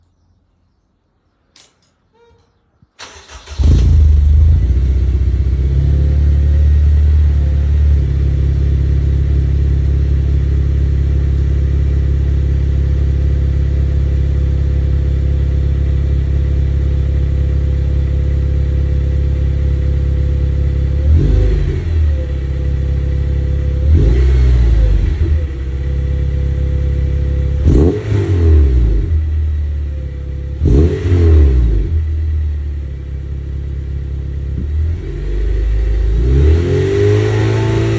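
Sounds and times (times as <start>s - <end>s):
engine revving: 3.0s - 11.3s, 20.2s - 29.6s, 30.4s - 32.9s, 34.4s - 37.9s
car engine starting and idling: 3.0s - 37.9s.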